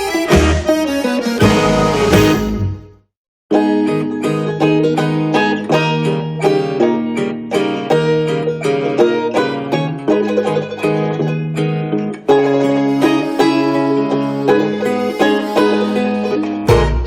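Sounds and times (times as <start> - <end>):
fast-plucked acoustic strings: 1.4 - 2.9, 3.6 - 17.0.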